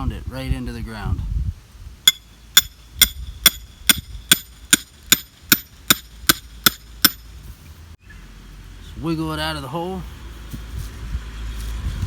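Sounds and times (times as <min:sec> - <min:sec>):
hammer striking steel stake: 0:02.0 - 0:07.3.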